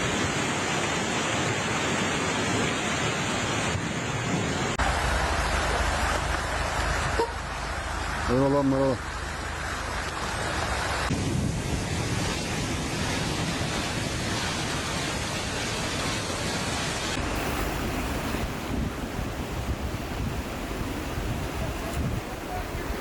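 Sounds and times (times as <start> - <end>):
rushing floodwater: 0.0 - 23.0
wind buffeting microphone: 11.1 - 23.0.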